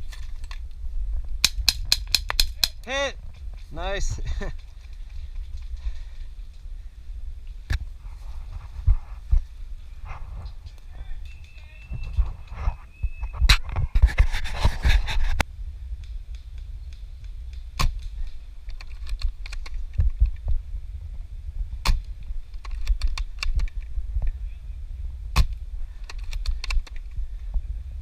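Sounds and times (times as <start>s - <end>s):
steady low rumble: 0.0s - 28.0s
rustling: 3.2s - 20.5s.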